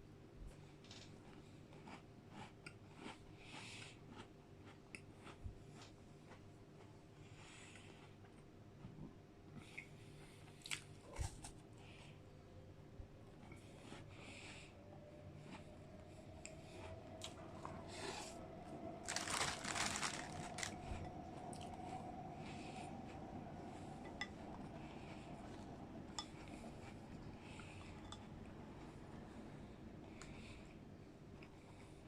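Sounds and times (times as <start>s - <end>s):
crunching: 19.0s - 20.8s
rustling: 19.0s - 21.1s.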